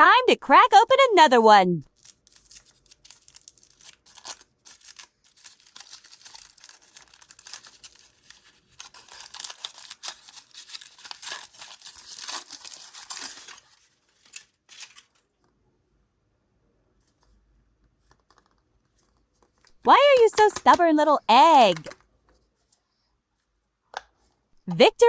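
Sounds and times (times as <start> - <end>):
packaging crackling and tearing: 1.9 - 15.3.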